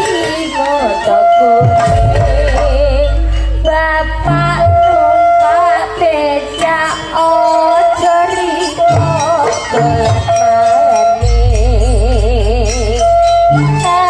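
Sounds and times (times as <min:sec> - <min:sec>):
jingling percussion: 0:00.0 - 0:14.0
wavering high melody: 0:00.0 - 0:14.0
drum strokes: 0:01.6 - 0:05.7, 0:08.9 - 0:14.0
deep sustained low tone: 0:11.2 - 0:13.7.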